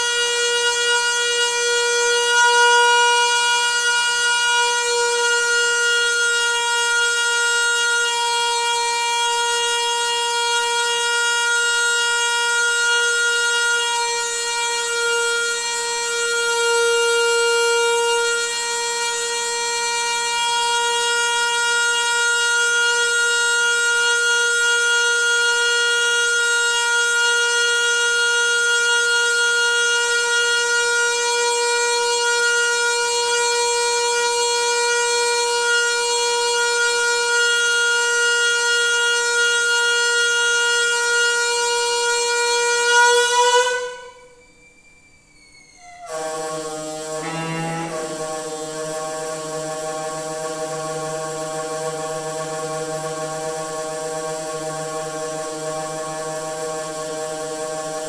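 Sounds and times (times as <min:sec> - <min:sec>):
water pipe droning: 0:45.5 - 0:58.0.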